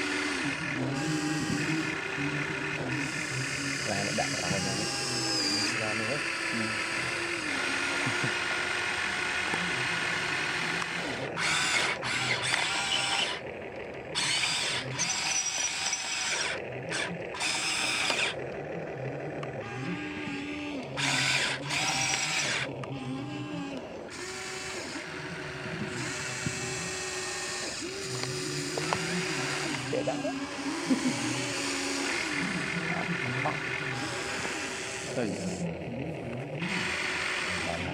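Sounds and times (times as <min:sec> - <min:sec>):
toy excavator motors whirring: 0:00.0 - 0:37.9.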